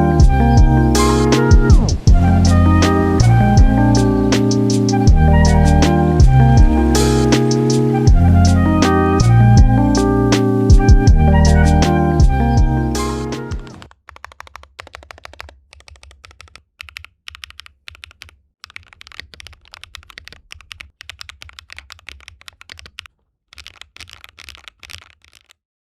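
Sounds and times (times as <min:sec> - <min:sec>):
typing on mechanical keyboard: 0:13.8 - 0:25.6.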